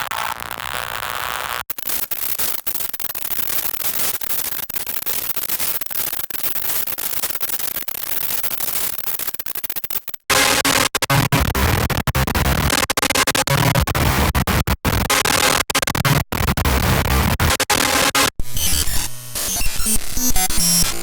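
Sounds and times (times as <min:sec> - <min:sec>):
harsh crackling synth static: 0:10.3 - 0:21.0.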